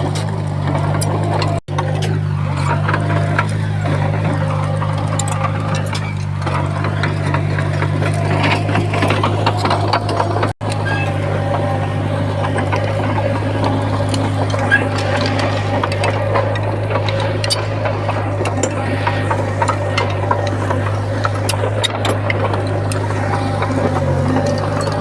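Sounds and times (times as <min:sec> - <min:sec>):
bulldozer diesel engine droning: 0:00.0 - 0:25.0
machine and rock clanking: 0:00.0 - 0:25.0.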